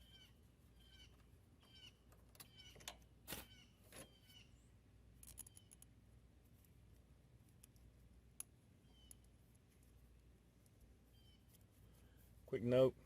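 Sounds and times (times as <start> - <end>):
faint bird chirps: 0.0 - 5.9, 8.8 - 9.6, 11.0 - 12.3.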